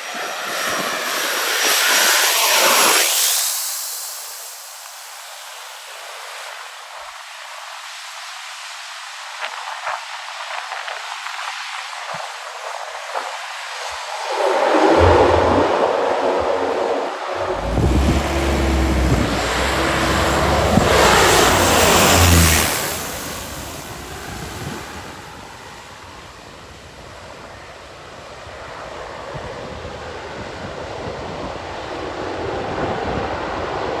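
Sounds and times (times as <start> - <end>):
wind: 0.0 - 34.0
surf: 13.1 - 25.6
propeller aircraft passing: 17.3 - 26.2.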